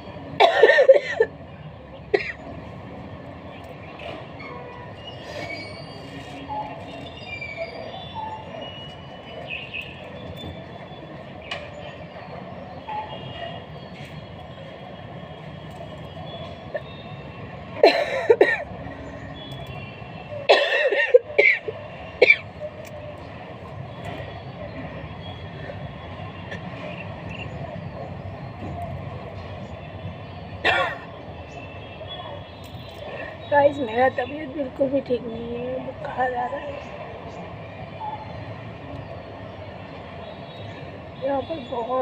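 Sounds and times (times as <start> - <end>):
steady background noise: 0.0 - 42.0
woman coughing: 0.4 - 1.3, 17.8 - 18.6, 20.5 - 22.4, 30.7 - 31.0.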